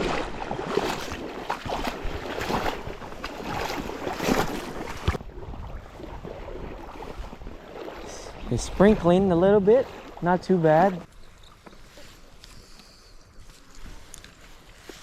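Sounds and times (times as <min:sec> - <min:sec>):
wind buffeting microphone: 0:00.0 - 0:10.0
river water flowing: 0:00.0 - 0:15.0.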